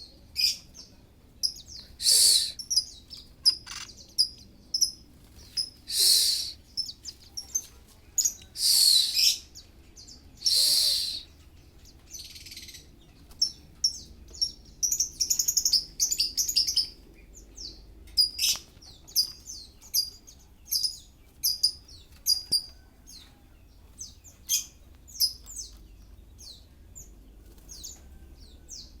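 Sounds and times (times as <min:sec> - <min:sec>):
bird sharp high chirps: 0:01.4 - 0:09.7, 0:10.4 - 0:11.4.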